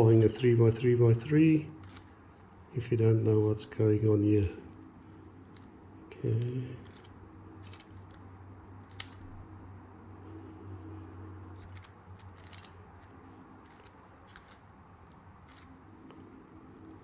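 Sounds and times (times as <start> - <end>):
low steady hum: 0.0 - 17.0
puzzle cube layers clicking: 11.6 - 14.6.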